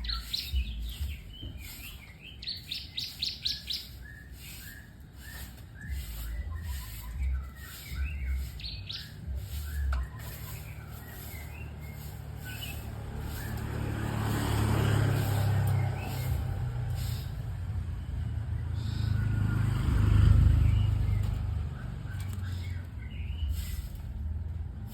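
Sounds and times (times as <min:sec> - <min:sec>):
bird chirping and whistling: 0:00.0 - 0:13.7, 0:20.6 - 0:24.0
low vehicle rumble: 0:00.0 - 0:24.9.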